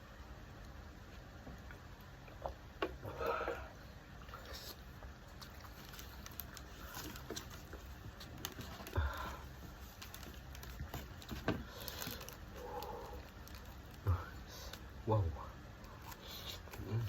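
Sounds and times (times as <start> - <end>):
quiet chewing: 0.6 - 14.9, 15.8 - 17.0
handling of food: 4.3 - 14.8.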